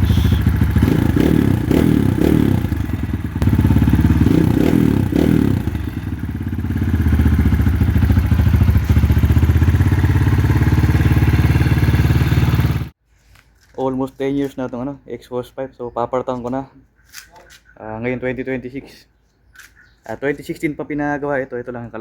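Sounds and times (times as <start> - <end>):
dirt bike engine revving: 0.0 - 12.9.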